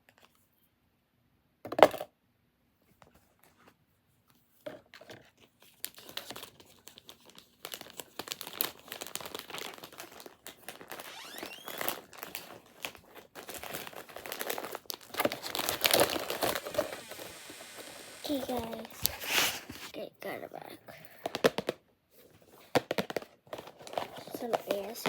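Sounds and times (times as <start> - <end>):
packaging crinkling: 6.1 - 19.9.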